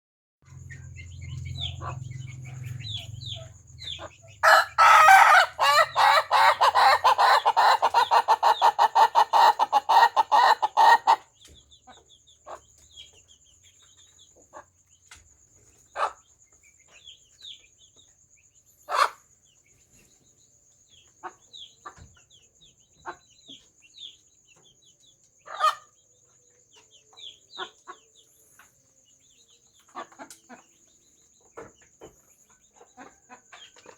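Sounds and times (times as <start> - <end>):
chicken clucks and peeps: 0.5 - 33.9
rooster laughing crow: 4.4 - 11.0.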